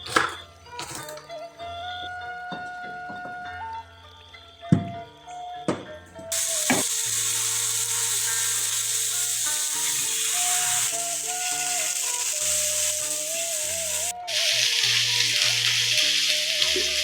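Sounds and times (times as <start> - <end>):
food frying in hot oil: 6.3 - 17.0.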